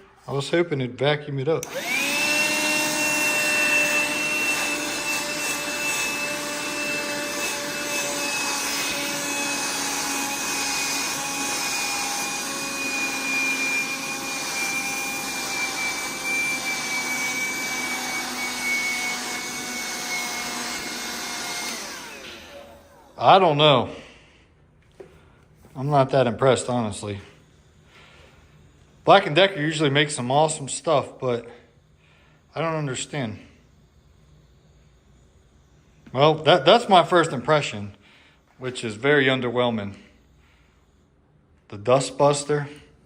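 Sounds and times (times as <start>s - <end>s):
handheld vacuum whining: 1.6s - 24.2s.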